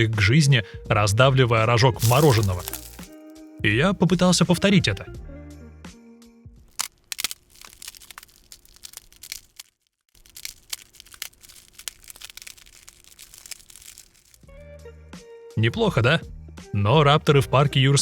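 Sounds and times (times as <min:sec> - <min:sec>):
ice cream cone crunching: 0:02.0 - 0:03.2, 0:06.7 - 0:14.5.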